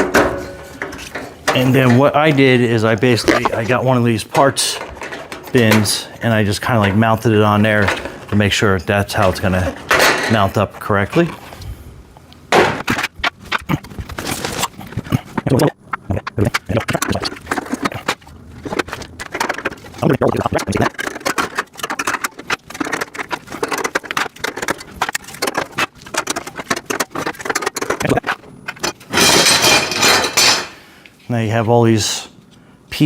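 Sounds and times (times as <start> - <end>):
metal and plastic parts clattering: 4.4 - 6.0, 6.7 - 8.5, 9.1 - 11.4, 16.5 - 30.8.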